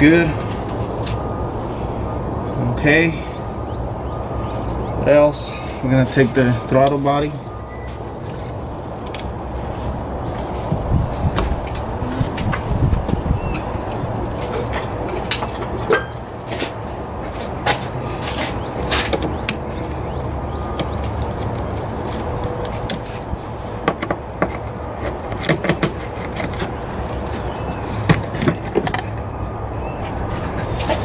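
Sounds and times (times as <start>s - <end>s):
clicks and knocks of hand tools: 13.5s - 19.6s, 20.8s - 29.3s.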